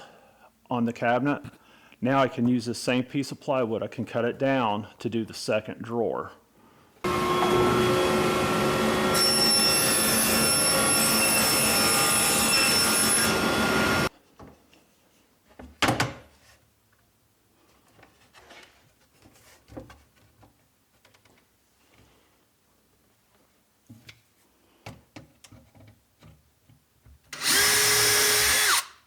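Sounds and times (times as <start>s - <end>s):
power saw cutting plywood: 7.1s - 14.1s, 27.4s - 29.0s.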